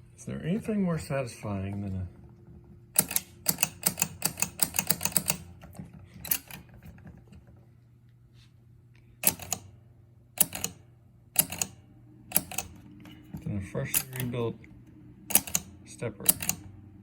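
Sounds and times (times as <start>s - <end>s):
ratcheting clicks of stepper unit: 2.9s - 7.5s, 9.2s - 9.7s, 15.3s - 16.7s.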